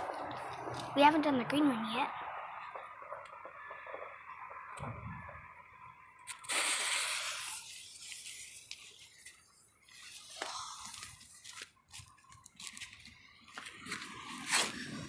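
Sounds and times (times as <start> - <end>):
crackles: 6.2 - 15.0
smoke bomb hissing: 6.3 - 8.8.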